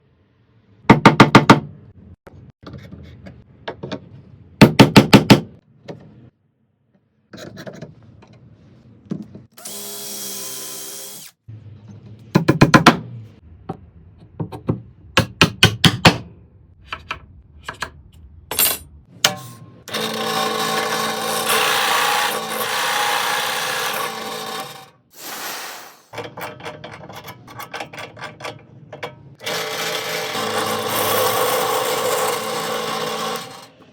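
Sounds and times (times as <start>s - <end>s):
power drill drilling into wood: 19.9s - 26.1s.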